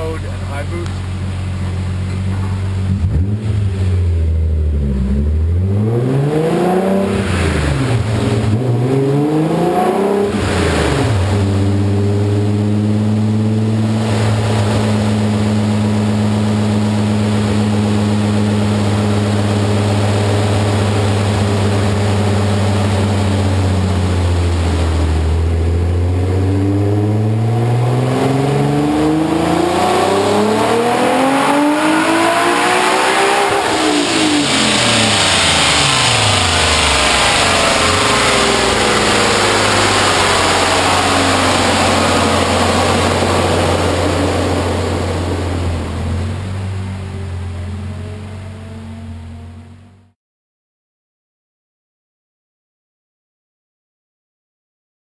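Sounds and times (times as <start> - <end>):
car engine revving: 0.0 - 50.2.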